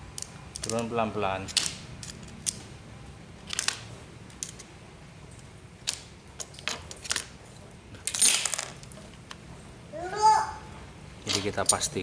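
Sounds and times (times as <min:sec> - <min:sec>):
low background hum: 0:00.0 - 0:12.0
small metal parts clicking: 0:00.1 - 0:02.7, 0:03.5 - 0:04.7, 0:08.0 - 0:09.3.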